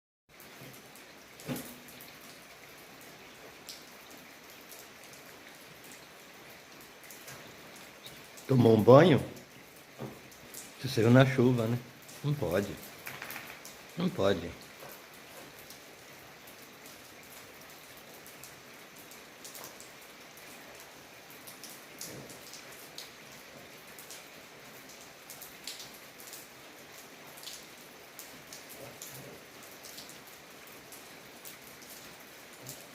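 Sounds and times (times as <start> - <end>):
rain falling: 0.3 - 32.9
drops ticking on a surface: 12.7 - 15.8
drops tapping a surface: 13.0 - 13.6.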